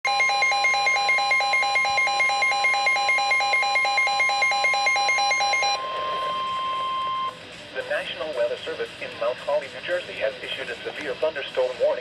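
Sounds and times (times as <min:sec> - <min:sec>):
warbling receiver alarm: 0:00.0 - 0:07.4
steady warning alert tone: 0:00.1 - 0:07.3.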